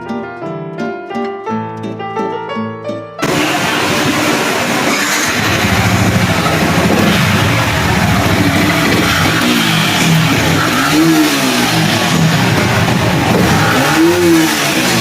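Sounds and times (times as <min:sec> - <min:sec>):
motorcycle engine revving: 0:03.2 - 0:15.0.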